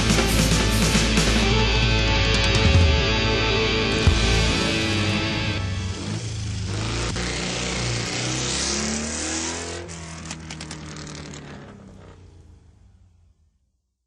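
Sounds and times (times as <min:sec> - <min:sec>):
motor revving: 0:04.8 - 0:12.2.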